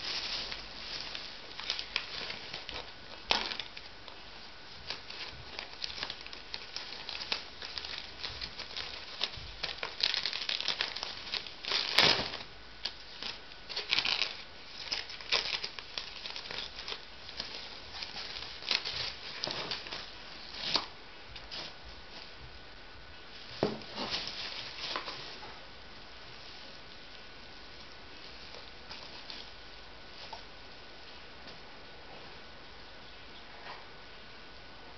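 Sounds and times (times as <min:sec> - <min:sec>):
packaging crinkling and rustling: 0:00.0 - 0:22.4, 0:23.4 - 0:25.6.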